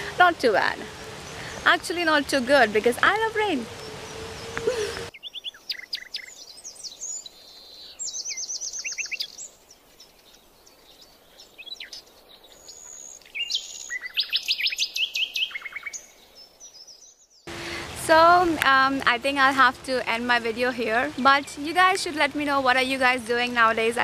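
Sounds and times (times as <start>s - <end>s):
steady hiss: 0.0s - 5.1s
small birds chirping and singing: 0.0s - 18.0s.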